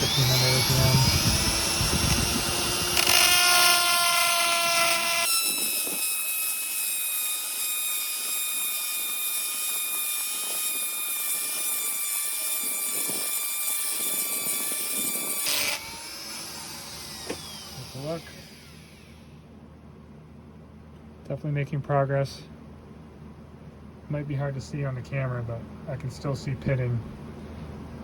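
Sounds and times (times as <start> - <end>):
lathe machine whine: 0.0 - 3.4, 15.6 - 19.2.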